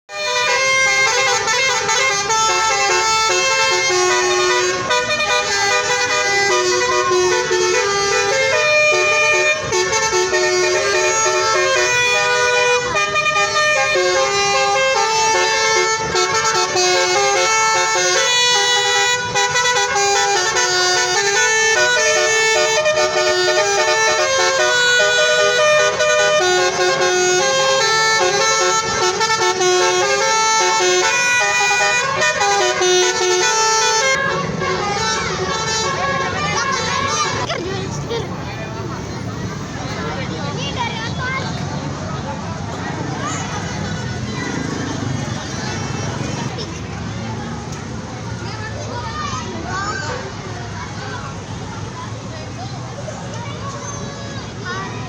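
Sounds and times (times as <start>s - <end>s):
multi-tone bus horn playing a tune: 0.1s - 40.1s.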